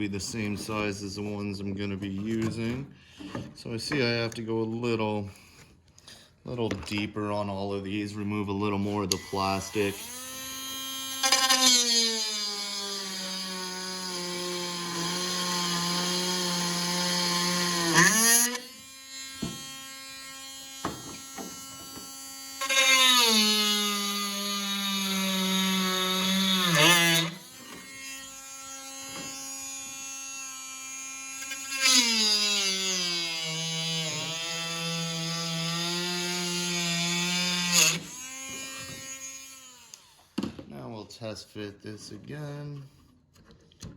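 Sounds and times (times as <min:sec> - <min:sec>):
rotary tool grinding plastic: 0:09.0 - 0:40.4.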